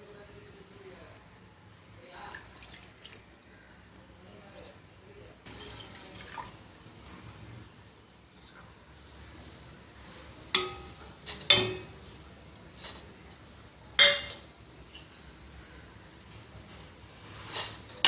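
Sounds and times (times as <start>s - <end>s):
kitchen utensils clinking: 10.6s - 12.0s, 14.0s - 15.1s.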